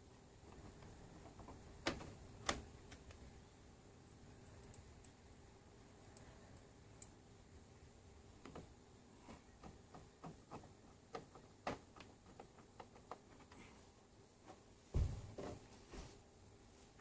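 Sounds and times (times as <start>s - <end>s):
faint clicks and knocks: 0.4s - 3.3s, 6.0s - 7.2s, 8.3s - 13.8s.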